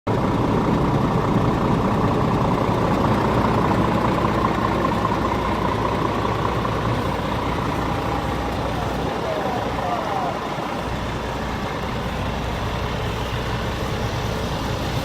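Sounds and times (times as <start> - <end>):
diesel engine idling: 0.1 - 15.0
faint steady whine: 0.1 - 15.0.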